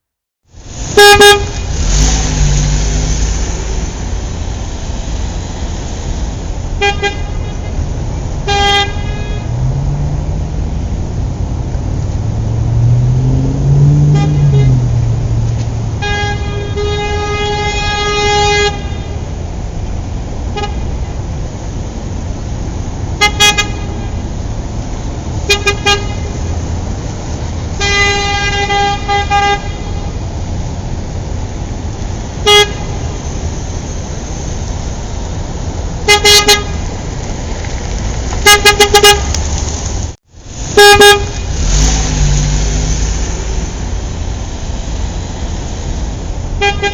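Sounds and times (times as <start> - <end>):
road traffic: 0.0 - 46.9
car horns honking: 0.9 - 2.4, 6.8 - 9.8, 13.2 - 19.4, 20.5 - 21.2, 23.1 - 24.4, 25.4 - 26.6, 27.7 - 30.4, 32.3 - 33.4, 36.0 - 37.0, 38.4 - 39.4, 40.6 - 42.2, 46.6 - 46.9.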